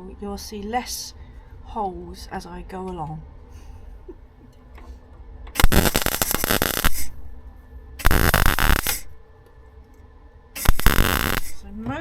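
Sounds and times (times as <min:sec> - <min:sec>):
welder crackling: 0:05.6 - 0:07.4, 0:08.0 - 0:09.2, 0:10.6 - 0:11.7.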